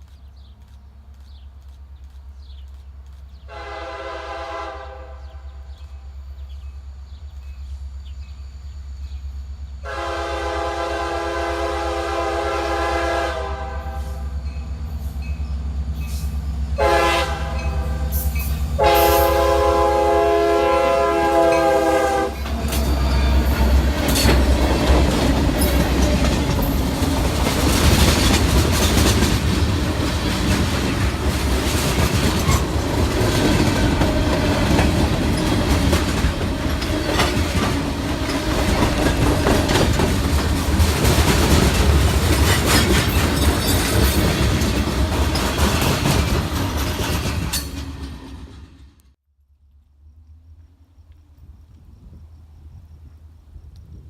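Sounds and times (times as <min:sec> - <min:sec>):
train passing with rumble: 0:00.0 - 0:49.2
train horn: 0:03.5 - 0:06.0, 0:09.8 - 0:14.4, 0:16.7 - 0:26.8
wheels clacking over rail joints: 0:22.3 - 0:48.8.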